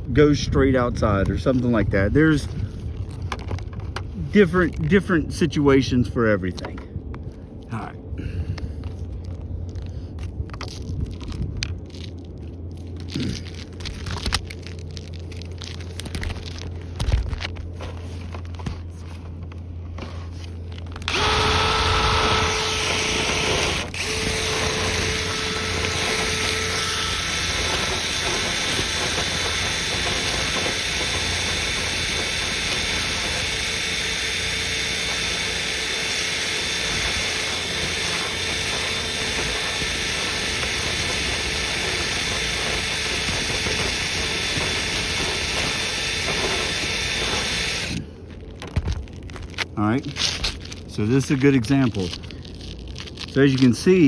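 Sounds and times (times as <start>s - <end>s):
power tool running: 20.9s - 48.1s.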